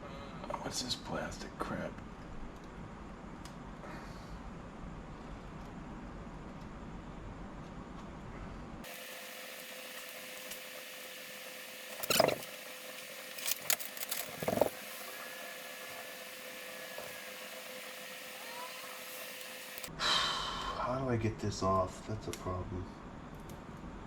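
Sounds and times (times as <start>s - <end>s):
faint hum: 0.0s - 24.0s
steady hiss: 8.8s - 20.0s.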